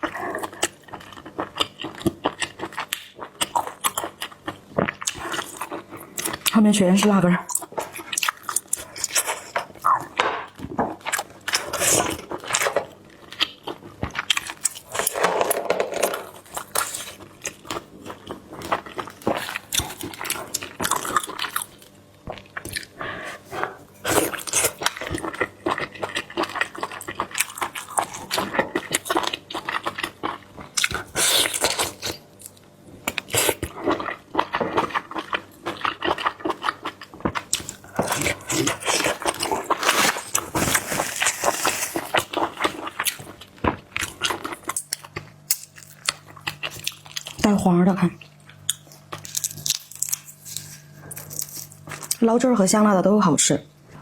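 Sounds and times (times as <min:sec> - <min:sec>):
chewing and biting seafood: 0:00.0 - 0:06.6, 0:15.9 - 0:47.5, 0:48.2 - 0:52.2.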